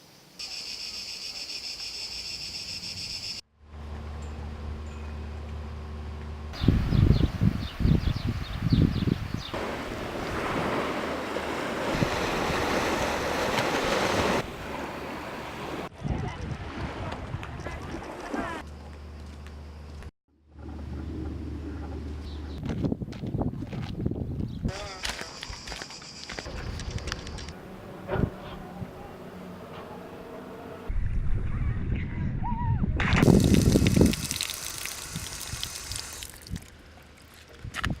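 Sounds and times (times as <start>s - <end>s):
wind on microphone: 6.6s - 11.0s, 11.8s - 14.8s, 15.8s - 18.2s, 22.5s - 24.7s, 30.9s - 36.7s
waves washing in: 9.5s - 15.9s
water rushing and splashing: 9.5s - 18.6s, 33.2s - 37.4s.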